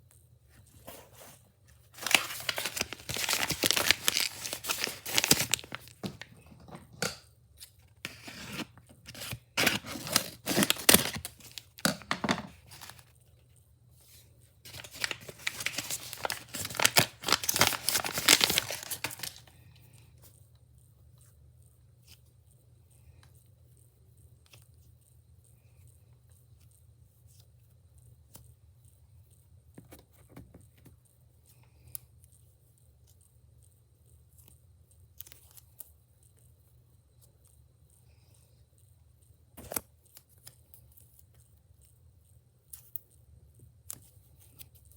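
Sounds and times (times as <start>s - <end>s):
packaging torn and crinkled: 2.0s - 6.3s, 8.1s - 13.1s, 14.7s - 19.5s.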